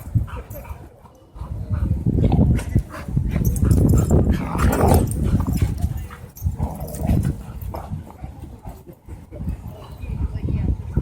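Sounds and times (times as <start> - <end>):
dogs growling: 2.9 - 8.9.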